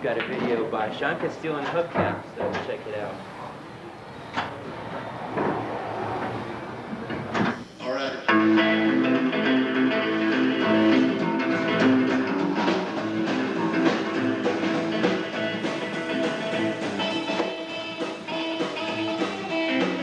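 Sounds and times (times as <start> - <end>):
rock band instrumental: 8.3 - 20.0.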